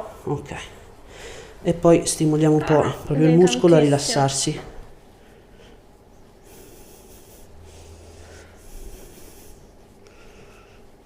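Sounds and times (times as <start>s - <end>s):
slow airy breaths: 1.0s - 1.6s, 5.1s - 11.0s.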